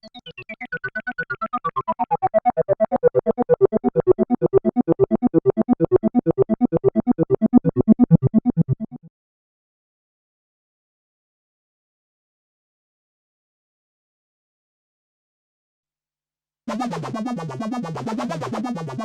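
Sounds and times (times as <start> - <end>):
synthesizer repeated notes: 0.0 - 9.1, 16.7 - 19.0.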